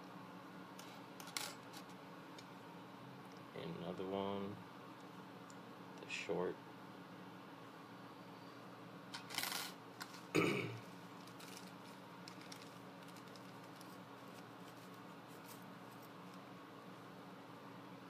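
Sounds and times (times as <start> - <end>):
packaging rustle: 11.2 - 16.2.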